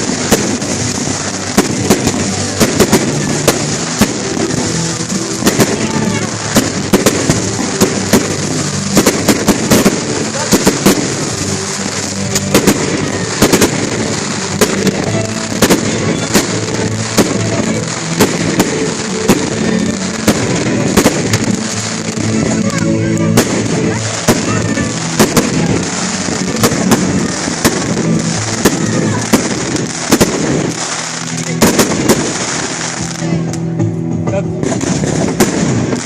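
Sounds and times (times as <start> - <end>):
fireworks bangs and crackles: 0.0 - 36.0
music playing: 0.0 - 36.0.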